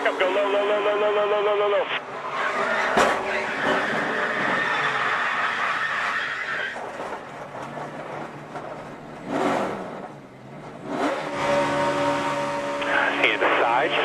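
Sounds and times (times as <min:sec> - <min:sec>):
race car engines passing: 0:08.1 - 0:14.0.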